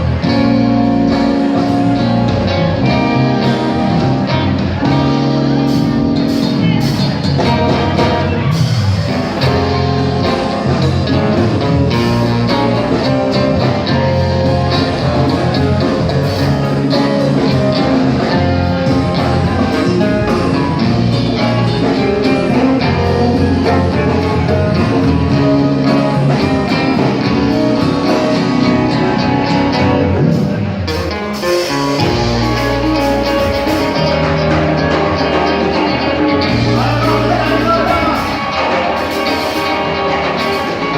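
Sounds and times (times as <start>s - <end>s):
electric guitar: 0.0s - 40.9s
rock band playing live: 0.0s - 40.9s.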